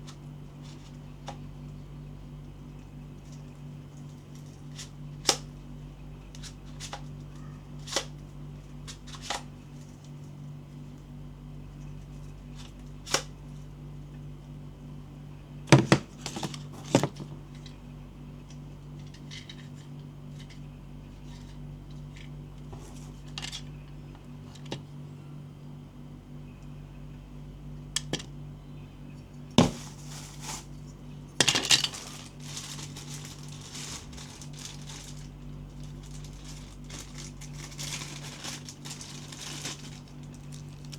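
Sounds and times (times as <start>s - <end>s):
steady low hum: 0.0s - 40.9s
toy and packaging handling clicks: 3.3s - 5.5s, 7.8s - 8.2s.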